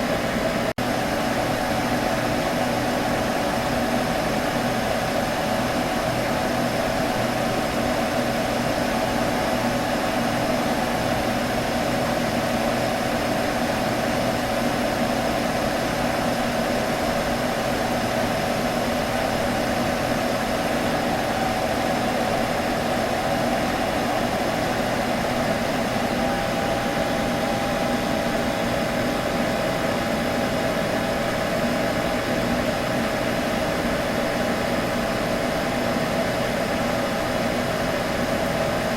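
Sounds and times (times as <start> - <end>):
computer electrical hum: 0.0 - 38.9.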